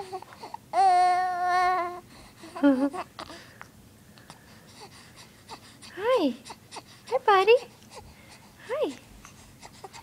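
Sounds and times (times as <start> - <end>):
baby cooing: 0.0 - 3.4.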